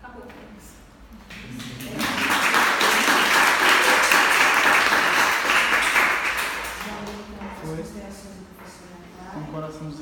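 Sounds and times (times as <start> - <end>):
audience applauding: 1.4 - 7.2.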